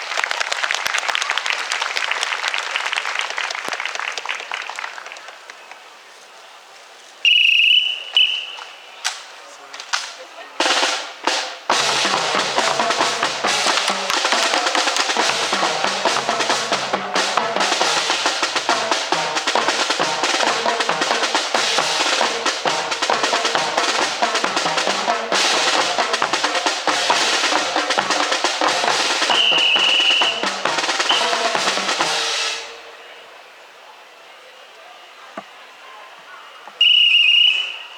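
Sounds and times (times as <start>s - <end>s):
snare drum rolls: 9.9s - 33.0s
bass drum beat: 11.2s - 32.2s.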